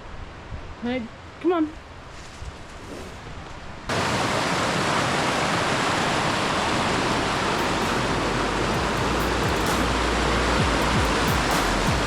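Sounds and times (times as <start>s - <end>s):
rushing whitewater: 3.9s - 12.0s.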